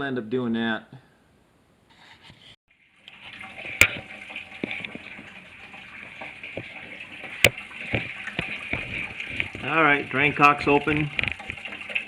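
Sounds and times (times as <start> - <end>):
coolant draining in a stream: 2.7 - 12.0.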